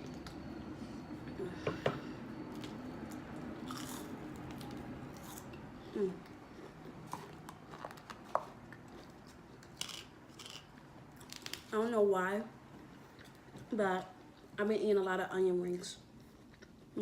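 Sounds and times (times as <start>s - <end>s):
chewing crispy food: 2.5s - 11.7s.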